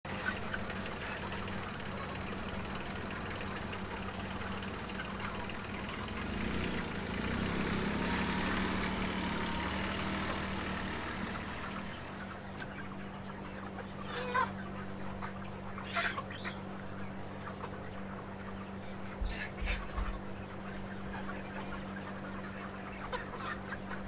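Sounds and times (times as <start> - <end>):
motor humming: 0.3 - 12.8.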